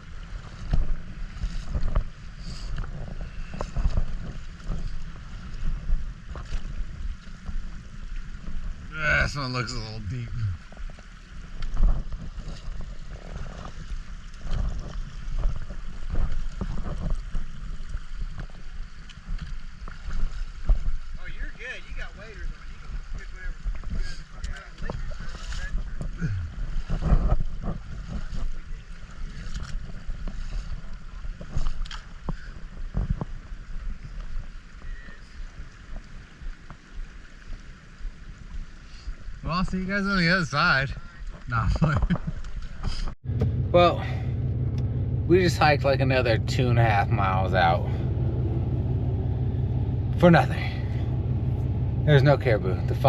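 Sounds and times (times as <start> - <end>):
water splashing and sloshing: 0.0 - 53.0
steady low rumble: 8.4 - 28.9, 43.1 - 53.0.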